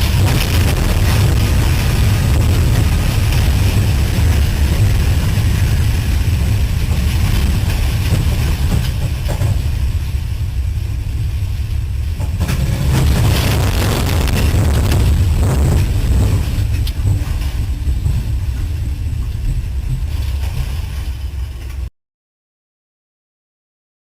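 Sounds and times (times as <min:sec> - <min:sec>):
vehicle low rumble: 0:00.0 - 0:21.9.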